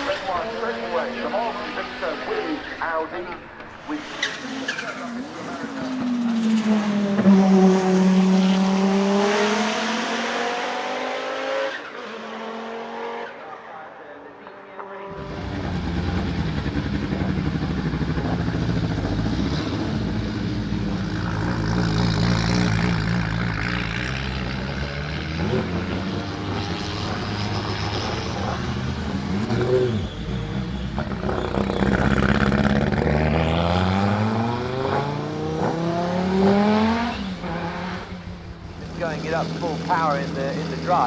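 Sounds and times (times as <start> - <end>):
car engine revving: 0.0 - 13.5, 15.0 - 41.0.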